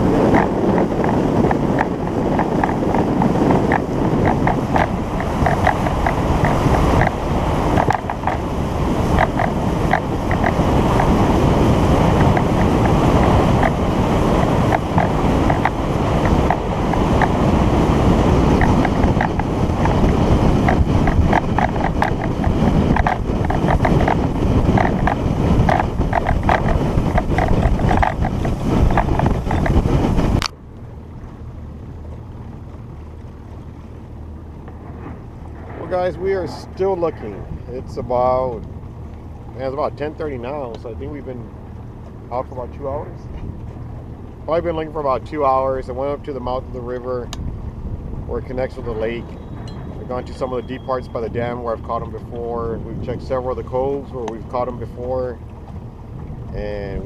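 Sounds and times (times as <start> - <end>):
low hum: 0.0 - 57.0
water slapping boat hull: 0.0 - 57.0
wind rushing on microphone: 0.0 - 57.0.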